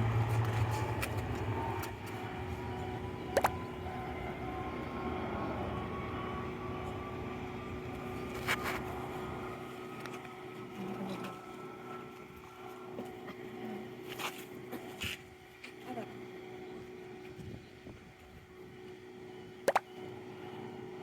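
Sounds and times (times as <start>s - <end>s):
car engine and road rumble: 0.0s - 10.8s
steady hum: 0.0s - 21.0s.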